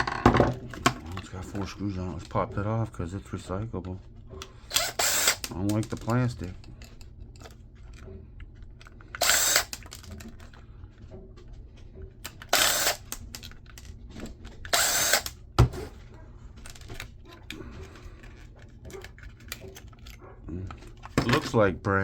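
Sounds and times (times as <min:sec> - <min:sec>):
cordless drill running: 0:04.6 - 0:05.6, 0:09.1 - 0:09.9, 0:12.3 - 0:13.3, 0:14.7 - 0:15.4.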